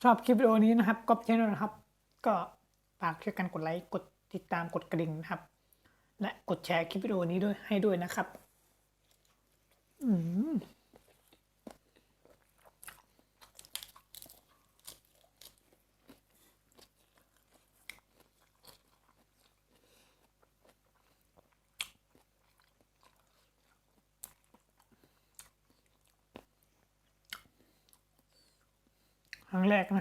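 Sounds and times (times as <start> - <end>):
biting and chewing crab: 10.8 - 29.4
crab shell crunching: 12.6 - 19.6.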